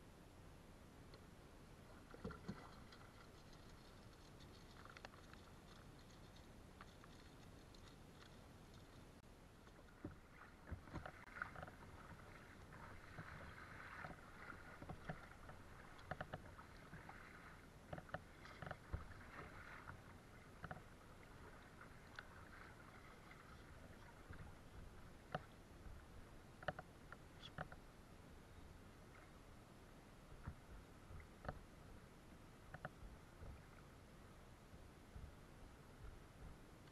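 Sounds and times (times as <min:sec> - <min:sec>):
paddle splashing in water: 0:09.7 - 0:25.6
light clicks and knocks: 0:14.8 - 0:16.5.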